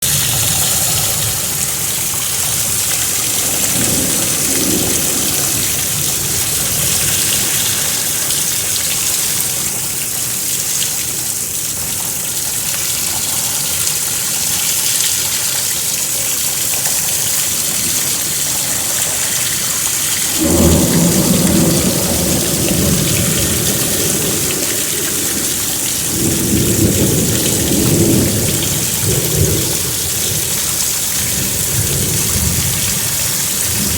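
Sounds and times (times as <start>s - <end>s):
thunder rumbling: 0.0s - 10.0s, 16.8s - 33.9s
heavy rain hissing: 0.0s - 33.9s.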